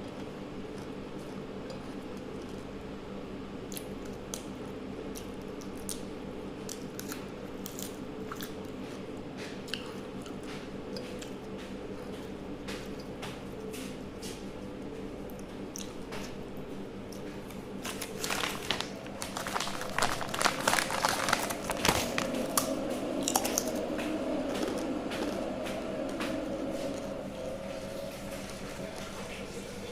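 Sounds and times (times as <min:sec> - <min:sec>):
faint steady hum: 0:00.0 - 0:29.9
chewing: 0:06.6 - 0:13.1, 0:15.2 - 0:16.4, 0:17.1 - 0:27.1.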